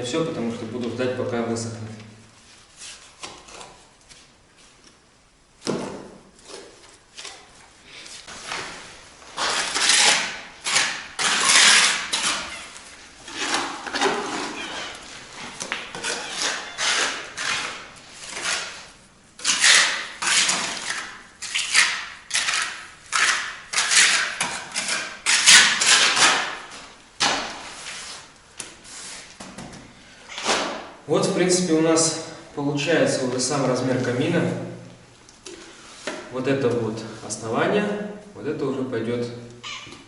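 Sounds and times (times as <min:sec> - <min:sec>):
trowel scraping mortar: 0:09.4 - 0:15.0, 0:15.9 - 0:26.7.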